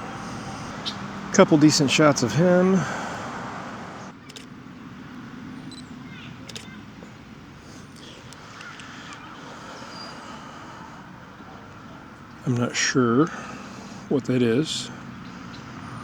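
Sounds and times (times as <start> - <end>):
faint bird calls: 0.0 - 1.4, 5.5 - 16.0
small clicks: 4.2 - 4.5, 5.7 - 6.8.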